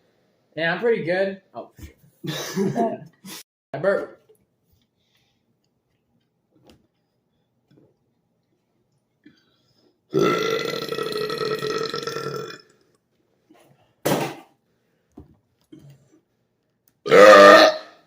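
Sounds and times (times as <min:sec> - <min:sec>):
loud burps: 0:10.1 - 0:12.8, 0:17.0 - 0:18.0.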